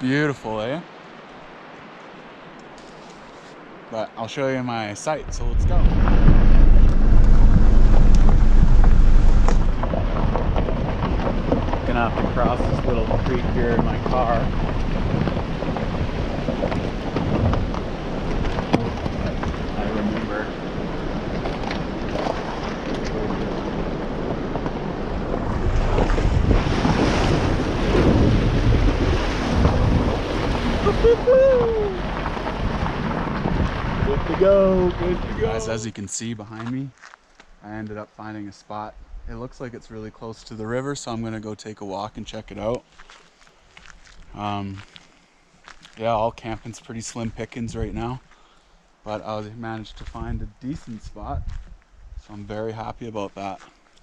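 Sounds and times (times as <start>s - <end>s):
water splashing: 5.0s - 35.8s
rising and falling tone: 5.2s - 9.9s
car rumbling over gravel: 5.2s - 30.9s, 31.9s - 35.8s
small gravel clicks: 5.3s - 26.2s, 42.6s - 47.3s.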